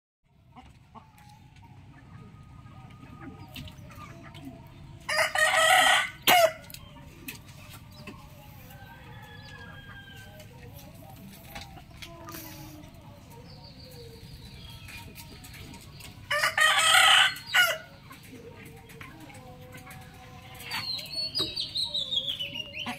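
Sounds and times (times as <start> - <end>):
rooster crowing: 5.1 - 6.6, 16.3 - 17.8.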